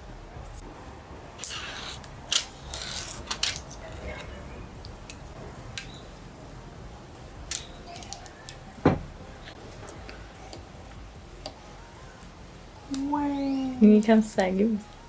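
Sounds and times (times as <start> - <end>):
heavy knock: 8.8 - 9.2.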